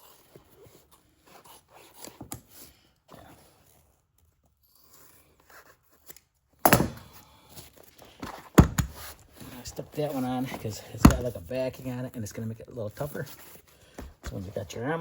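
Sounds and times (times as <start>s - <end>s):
scissors cutting foam: 0.0s - 7.8s.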